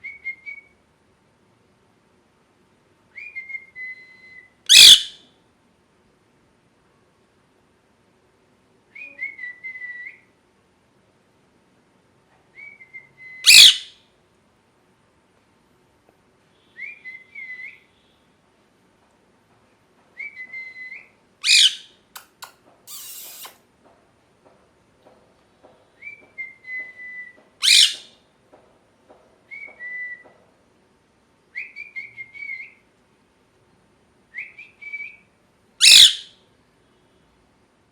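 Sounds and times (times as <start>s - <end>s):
parrot whistled chirps: 3.2s - 5.2s, 12.6s - 13.9s, 20.2s - 21.9s, 22.9s - 23.6s, 26.0s - 28.1s, 35.8s - 36.3s
parrot harsh shriek: 4.7s - 5.2s, 13.5s - 13.9s, 21.4s - 21.9s, 22.9s - 23.6s, 27.6s - 28.0s, 35.8s - 36.3s.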